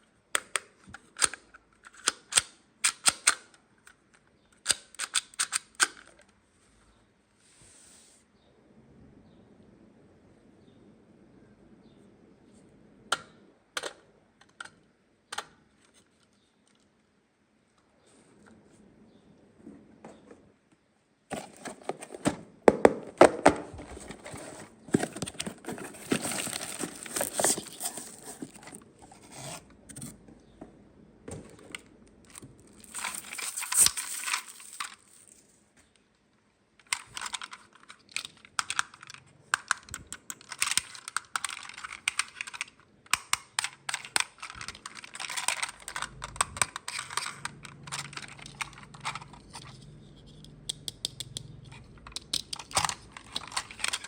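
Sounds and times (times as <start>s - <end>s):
packaging crinkling and tearing: 23.9s - 29.6s, 32.3s - 35.4s.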